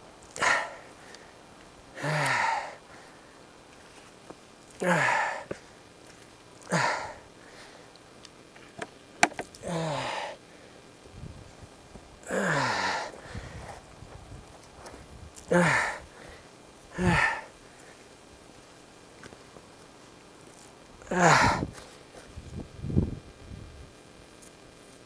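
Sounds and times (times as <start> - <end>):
man's hoarse breathy exhalations: 0.4 - 1.3, 2.0 - 3.3, 4.8 - 5.6, 6.6 - 7.9, 9.6 - 10.7, 12.3 - 13.8, 15.5 - 18.0, 21.1 - 21.9.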